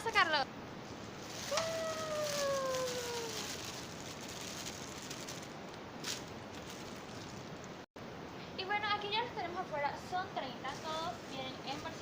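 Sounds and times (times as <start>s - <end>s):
plastic bags crinkling: 1.2s - 7.7s.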